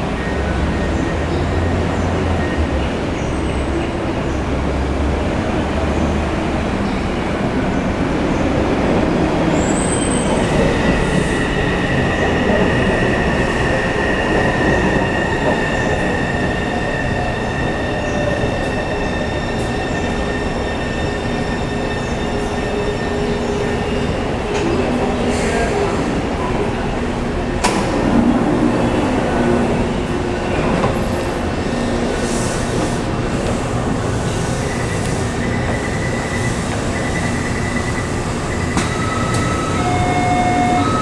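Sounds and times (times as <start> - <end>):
train wheels rumbling on rail: 0.0 - 41.0
high whining inverter tones: 35.3 - 41.0.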